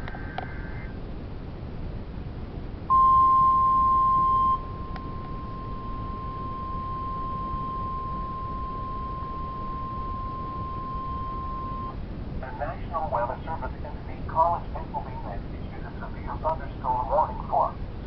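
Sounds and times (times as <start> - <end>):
radio hiss: 0.0 - 1.0, 9.3 - 18.0.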